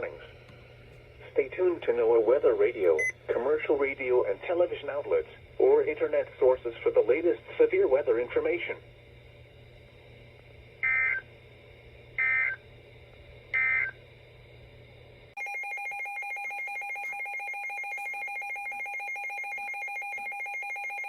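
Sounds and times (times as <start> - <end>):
short buzzing data bursts: 10.8 - 11.2, 12.2 - 12.6.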